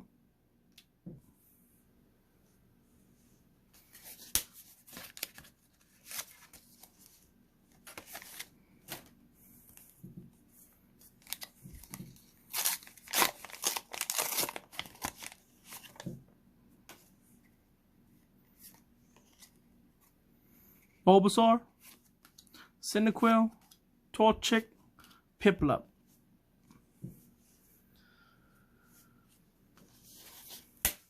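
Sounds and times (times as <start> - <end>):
plastic wrapper tearing and crinkling: 11.2 - 15.9.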